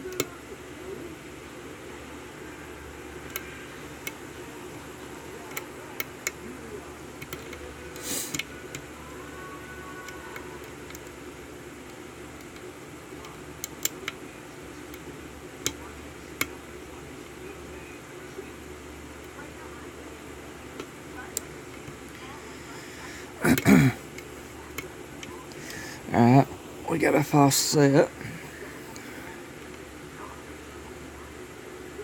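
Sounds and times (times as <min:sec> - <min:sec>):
steady background hum: 0:00.0 - 0:32.0.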